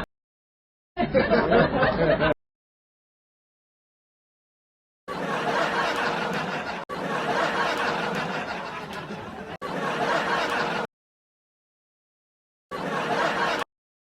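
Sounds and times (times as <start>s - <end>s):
canned audience laughter: 1.0s - 2.4s, 5.1s - 10.9s, 12.7s - 13.7s.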